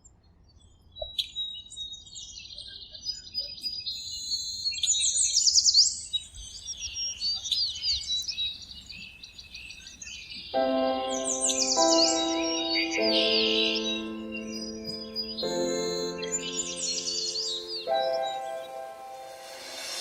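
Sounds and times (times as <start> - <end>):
birds chirping and singing: 6.2 - 20.0.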